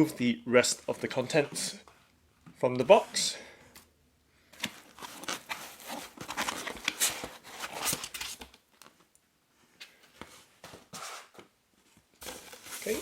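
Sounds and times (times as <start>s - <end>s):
packaging rustling and scraping: 4.6s - 8.9s, 12.2s - 13.0s.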